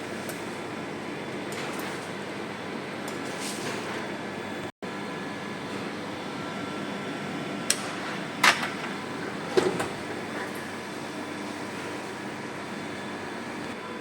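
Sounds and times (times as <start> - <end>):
textile printing machine whirring: 0.0 - 14.0.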